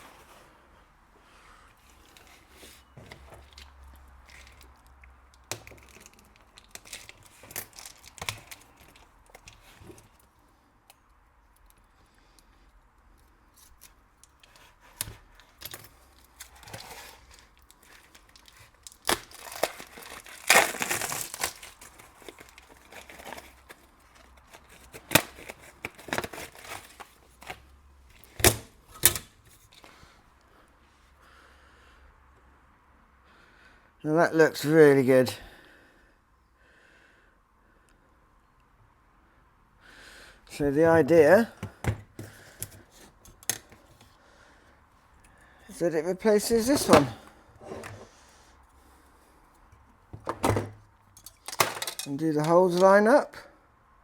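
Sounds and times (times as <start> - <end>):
packaging tearing and crinkling: 3.2 - 10.2, 13.6 - 29.9, 46.2 - 47.3
handling clicks and knocks: 16.5 - 29.9, 46.4 - 48.1, 50.2 - 53.0.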